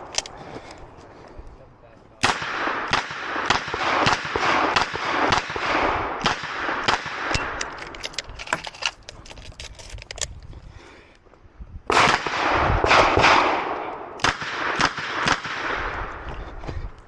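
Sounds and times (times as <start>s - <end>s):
sharp clicks and knocks: 7.3s - 10.5s.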